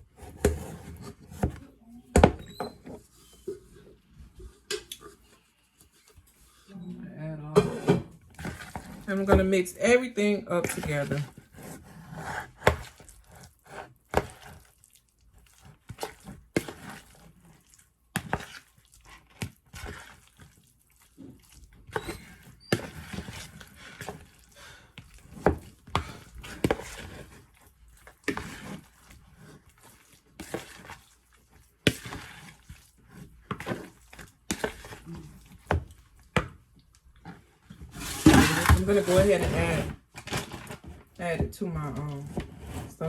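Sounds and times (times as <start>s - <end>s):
utensil scraping a bowl: 0.0s - 6.9s, 7.5s - 36.3s, 37.2s - 43.0s
wet squishing of mash: 8.2s - 9.6s, 10.6s - 42.4s.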